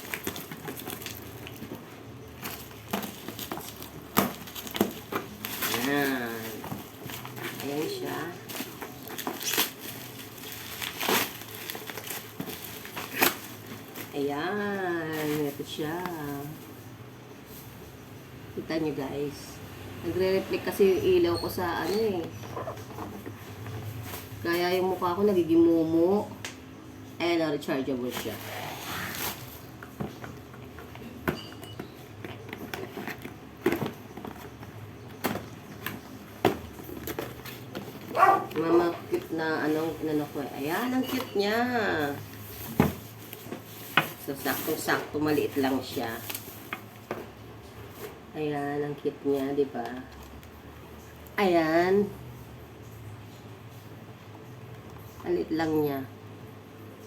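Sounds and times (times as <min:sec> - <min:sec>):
plastic packaging crinkling: 0:00.0 - 0:16.9, 0:28.1 - 0:47.1.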